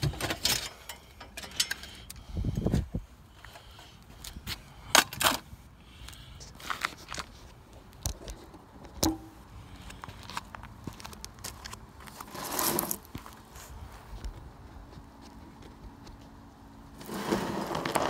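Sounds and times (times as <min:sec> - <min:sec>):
scraping rustle: 0:12.1 - 0:13.8, 0:17.0 - 0:18.0.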